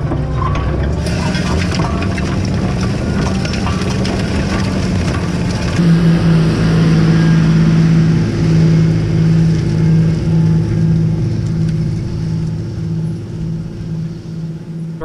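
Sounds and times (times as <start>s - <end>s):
crunching rattling noise: 0.0s - 6.1s
tractor diesel engine: 0.0s - 15.0s.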